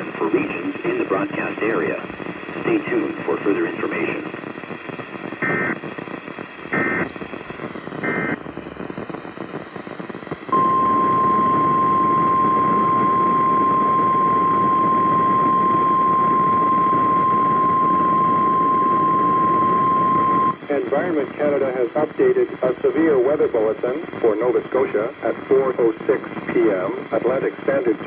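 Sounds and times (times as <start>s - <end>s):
radio static: 0.0s - 28.0s
steady alarm tone: 10.5s - 20.6s.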